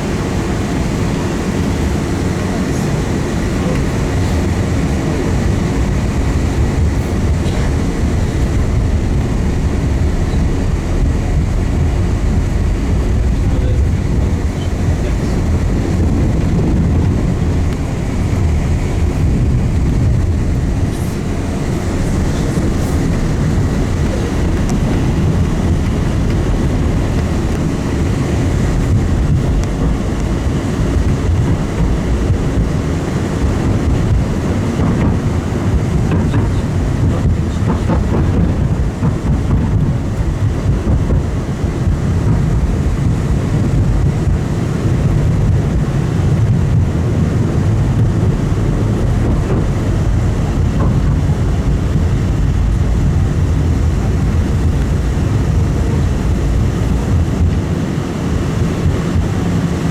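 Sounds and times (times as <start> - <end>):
tram wheels rumbling on rails: 0.0 - 59.9.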